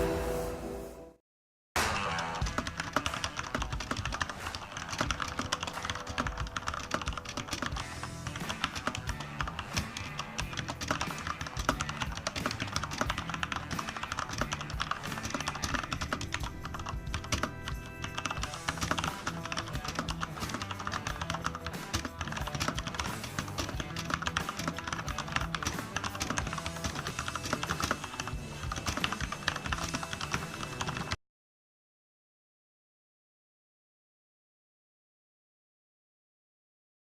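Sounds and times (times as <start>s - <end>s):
background music: 0.0s - 1.2s, 2.0s - 31.2s
mechanical keyboard typing: 2.6s - 31.2s.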